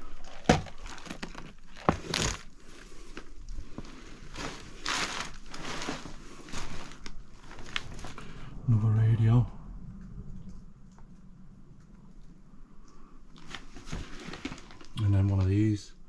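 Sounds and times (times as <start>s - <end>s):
papers rustling and crunching: 0.0s - 8.5s, 12.9s - 15.6s.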